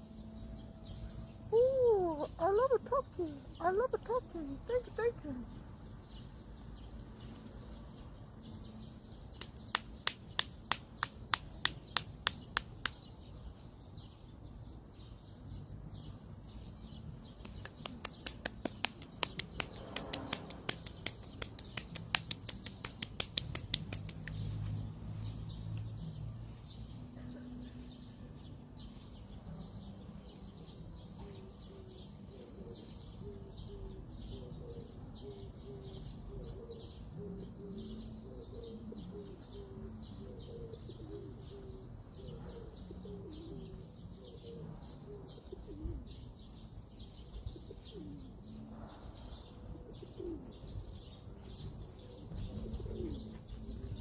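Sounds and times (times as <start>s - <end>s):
sharp clicks or slaps: 9.3s - 13.3s, 17.2s - 24.8s.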